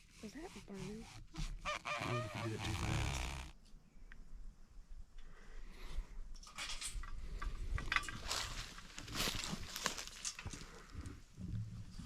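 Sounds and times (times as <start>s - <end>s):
rustling and scuffing of gear: 7.8s - 10.9s.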